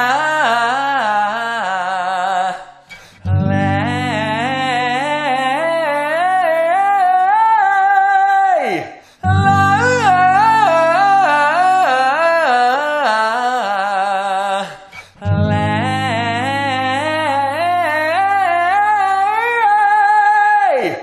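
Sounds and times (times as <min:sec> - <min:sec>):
person singing scales: 0:03.3 - 0:06.5, 0:09.2 - 0:21.0.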